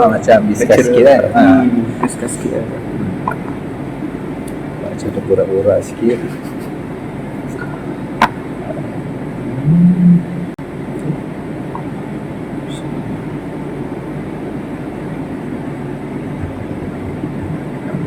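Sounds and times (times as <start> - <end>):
low rumbling background noise: 0.0 - 18.0
brief low hum: 9.5 - 11.2.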